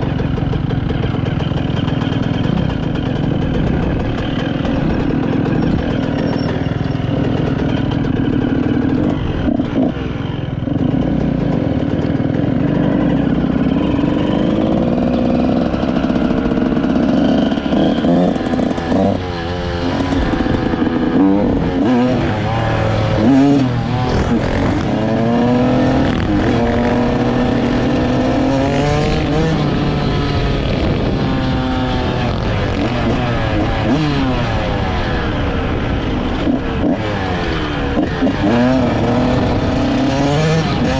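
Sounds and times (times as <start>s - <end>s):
two-stroke motorcycle engine revving: 0.0s - 40.9s.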